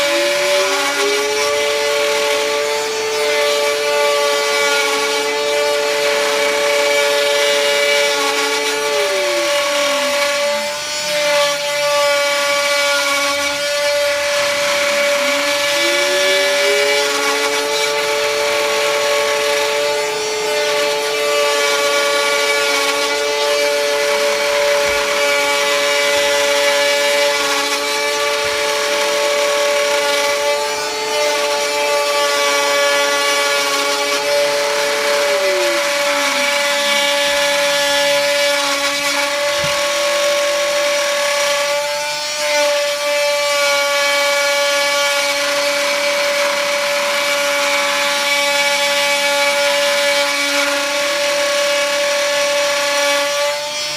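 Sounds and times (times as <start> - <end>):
sliding machine tone: 0.0 - 41.2
cnc router whining: 0.0 - 53.9.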